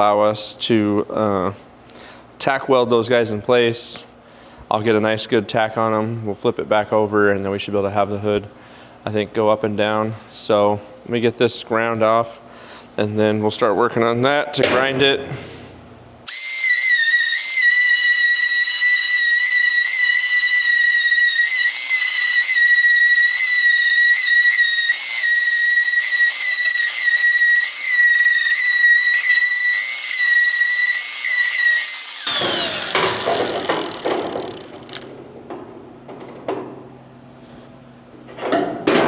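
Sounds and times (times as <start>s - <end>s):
grinder whining on steel: 16.3s - 35.0s.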